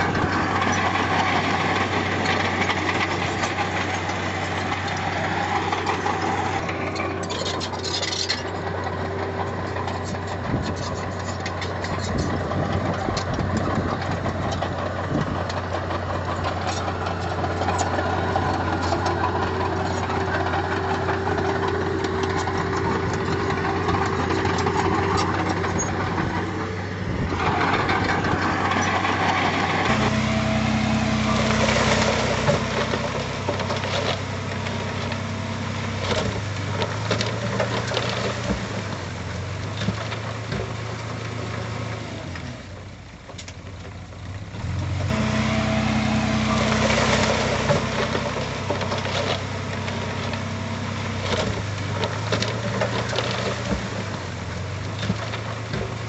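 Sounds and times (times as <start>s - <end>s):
metal clanks and rattles: 0.0s - 30.3s
heavy diesel engine running: 0.0s - 56.0s.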